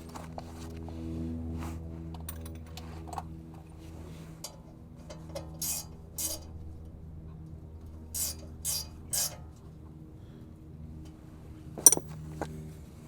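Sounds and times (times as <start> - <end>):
metallic clicks and clinks: 11.9 - 12.1.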